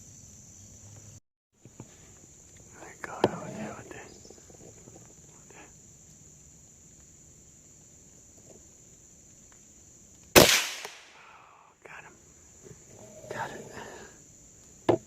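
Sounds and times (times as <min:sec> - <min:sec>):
insects droning: 0:00.0 - 0:15.0
rifle shot: 0:10.4 - 0:11.2.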